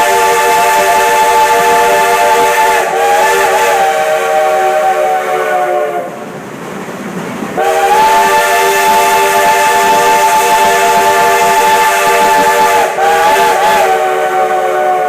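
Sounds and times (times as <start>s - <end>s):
steam locomotive chime whistle: 0.0s - 6.2s, 7.6s - 15.0s.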